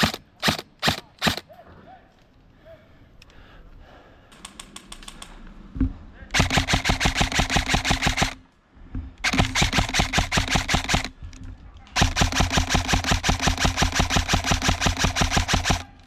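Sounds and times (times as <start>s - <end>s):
airsoft rifle firing bursts: 0.0s - 1.5s, 6.3s - 8.4s, 9.2s - 11.2s, 11.9s - 16.0s.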